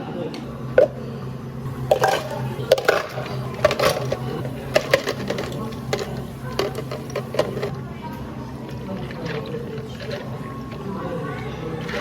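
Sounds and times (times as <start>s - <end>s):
low machine hum: 0.0s - 12.0s
cups and utensils clattering: 1.7s - 7.7s, 8.7s - 11.0s.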